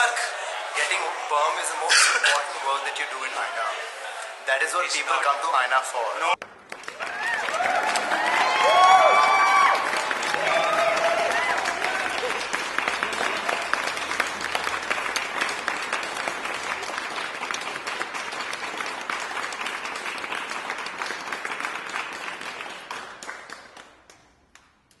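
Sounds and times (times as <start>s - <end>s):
audience applause: 6.4s - 24.2s.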